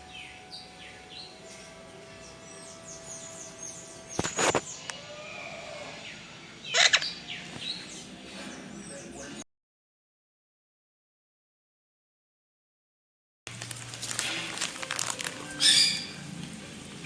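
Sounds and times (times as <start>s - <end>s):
small birds chirping: 0.0s - 5.0s, 5.7s - 9.4s, 15.4s - 16.3s.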